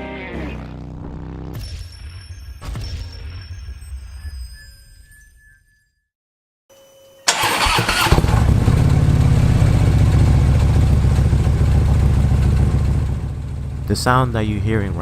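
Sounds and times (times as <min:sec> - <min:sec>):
starter motor cranking: 0:07.3 - 0:08.7
motorcycle engine idling: 0:07.3 - 0:15.0.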